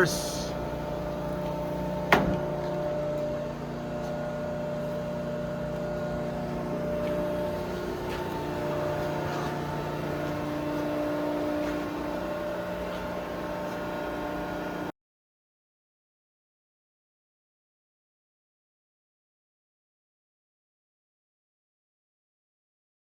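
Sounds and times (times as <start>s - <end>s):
hydraulic power unit humming: 0.0s - 14.9s
sharp clunk: 2.1s - 2.6s.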